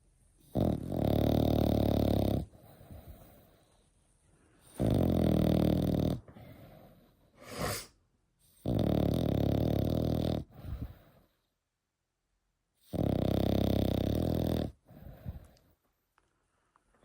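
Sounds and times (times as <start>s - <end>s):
puppy snoring: 0.4s - 3.6s, 4.6s - 11.5s, 12.8s - 15.8s
soft breath: 6.3s - 8.0s.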